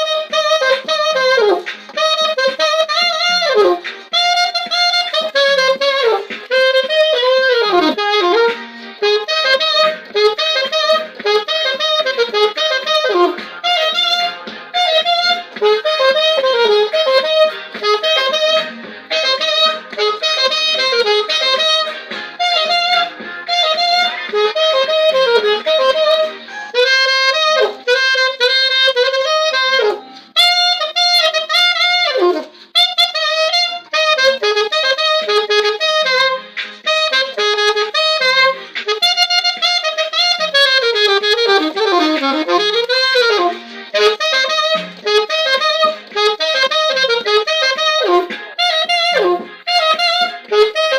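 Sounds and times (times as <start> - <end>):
saxophone playing pop melody: 0.0 - 50.9.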